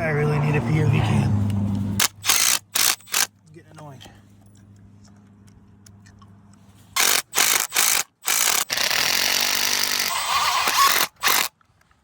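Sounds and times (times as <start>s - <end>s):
power drill driving screws: 2.0s - 3.3s, 7.0s - 11.5s.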